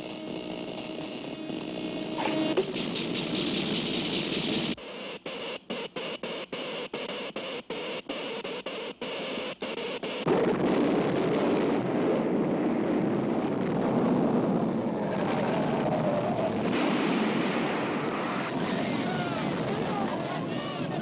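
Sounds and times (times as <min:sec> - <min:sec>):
pulsing electrical hum: 0:00.0 - 0:15.5
rumbling noise: 0:10.3 - 0:21.0.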